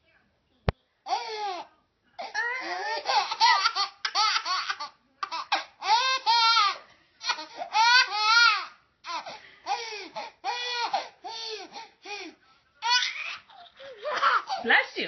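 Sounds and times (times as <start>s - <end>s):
baby giggling: 2.6s - 11.8s, 12.8s - 14.6s.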